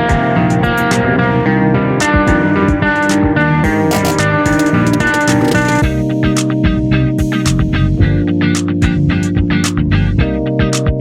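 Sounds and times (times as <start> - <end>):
guitar-led music with drums: 0.0 - 11.0.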